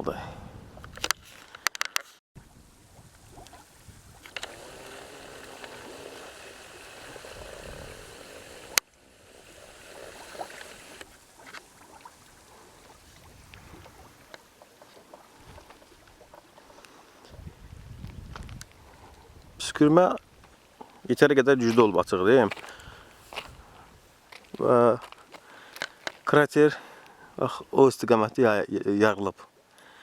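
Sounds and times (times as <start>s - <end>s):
mud bubbling: 2.4s - 19.6s.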